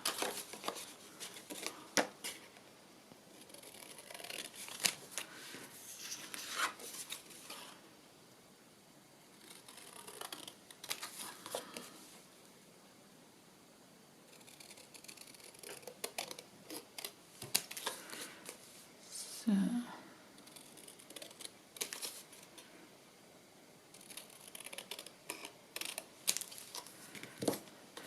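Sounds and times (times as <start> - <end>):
scissors cutting paper: 9.5 - 11.0, 14.4 - 17.1.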